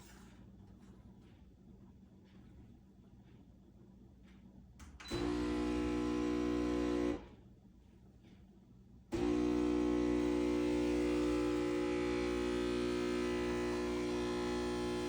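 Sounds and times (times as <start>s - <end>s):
espresso machine pump humming: 9.2s - 15.0s.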